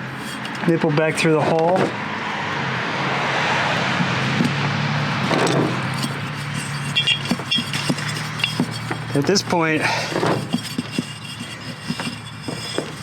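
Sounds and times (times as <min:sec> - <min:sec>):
rushing vehicle-like noise: 0:00.0 - 0:13.0
steady low hum: 0:04.1 - 0:13.0.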